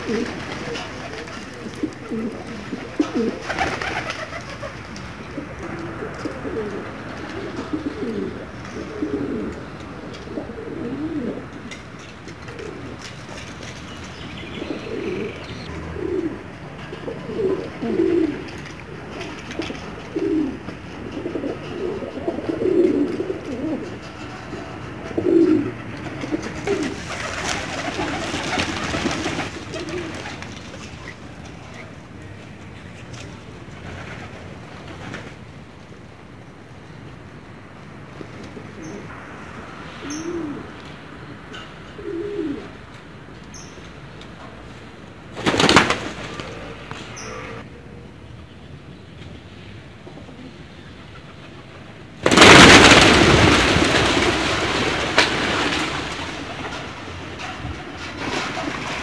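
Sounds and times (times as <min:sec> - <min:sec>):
pigeons cooing: 0:00.0 - 0:32.0, 0:38.1 - 0:39.2, 0:40.0 - 0:40.9, 0:41.5 - 0:42.9
rush of noise: 0:37.4 - 0:43.4.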